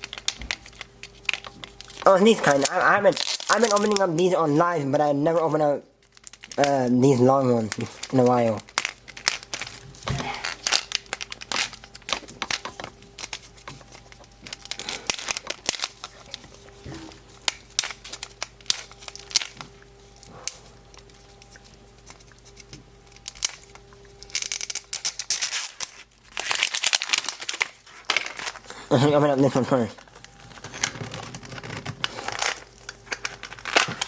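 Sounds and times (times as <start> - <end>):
faint steady hum: 0.0 - 34.0
plastic wrap crinkling and tearing: 0.0 - 34.0.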